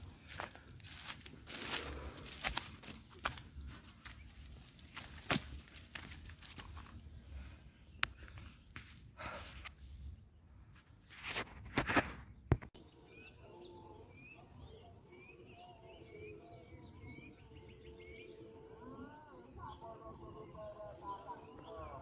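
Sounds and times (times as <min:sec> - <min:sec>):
footsteps through undergrowth: 0:00.0 - 0:07.2
high insect drone: 0:00.0 - 0:11.0, 0:12.8 - 0:22.0
bird chirps: 0:12.8 - 0:22.0.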